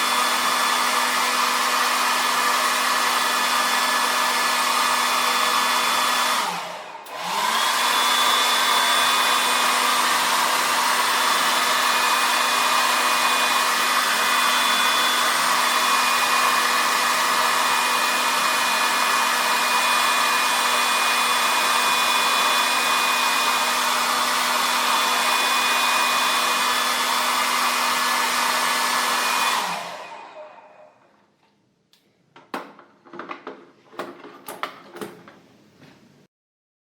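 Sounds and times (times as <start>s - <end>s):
hair dryer blowing: 0.0s - 31.1s
clicks and knocks: 32.3s - 35.4s.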